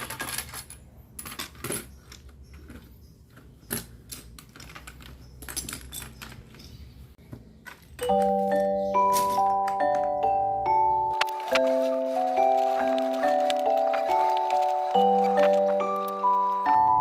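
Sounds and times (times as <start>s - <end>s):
xylophone-like music: 8.0s - 17.0s.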